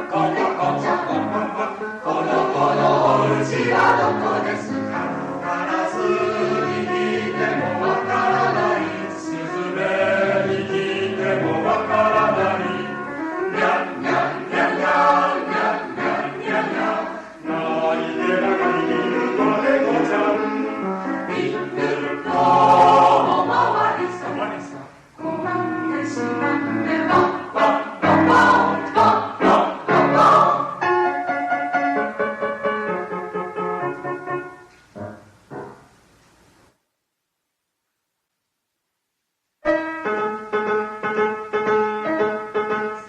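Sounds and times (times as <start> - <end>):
mixed choir singing: 0.0 - 31.0
piano accompaniment: 0.0 - 36.8, 39.6 - 43.0.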